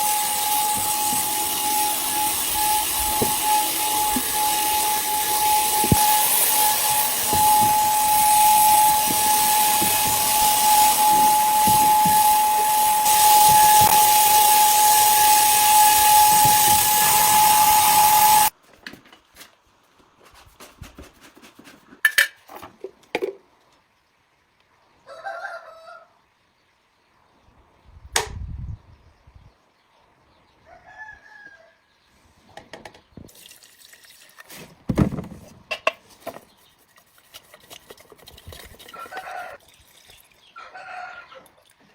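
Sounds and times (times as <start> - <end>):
hiss of escaping air: 0.0 - 18.5
whistling tone: 0.0 - 18.5.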